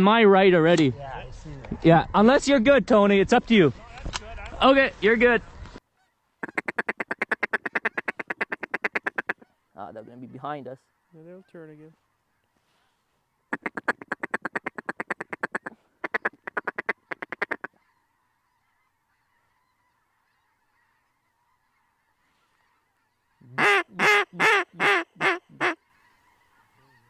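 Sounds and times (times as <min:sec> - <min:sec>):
distant goose flock: 0:05.8 - 0:27.0
loud goose honks: 0:06.0 - 0:09.6, 0:13.5 - 0:18.0, 0:23.4 - 0:27.0
duck chatter: 0:06.4 - 0:10.0, 0:13.5 - 0:17.9, 0:23.3 - 0:27.0.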